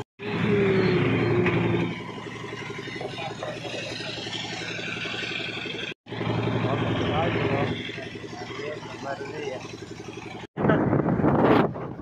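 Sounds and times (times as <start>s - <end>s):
motorcycle engine idling: 2.0s - 10.5s.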